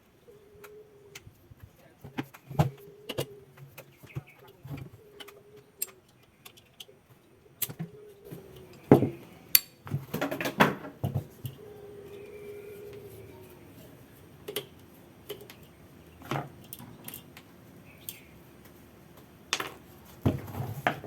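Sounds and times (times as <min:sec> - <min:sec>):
faint hum: 0:11.0 - 0:20.1.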